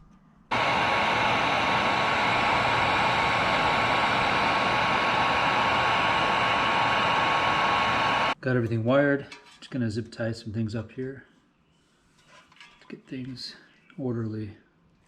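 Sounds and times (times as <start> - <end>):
faint high whine: 0.0 - 8.4
heat gun blowing air: 0.5 - 8.4.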